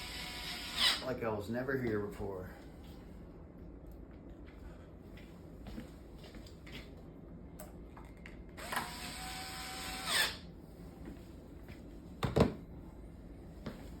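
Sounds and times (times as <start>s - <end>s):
power drill whining: 0.0s - 1.0s, 8.6s - 10.4s.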